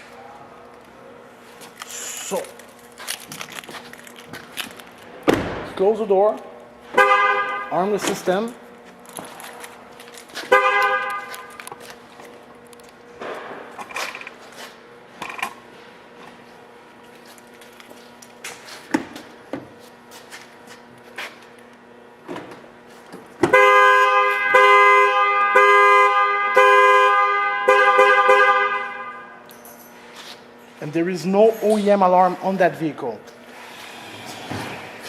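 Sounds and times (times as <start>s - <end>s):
car horn honking: 6.9s - 7.9s, 10.4s - 11.6s, 23.5s - 29.4s.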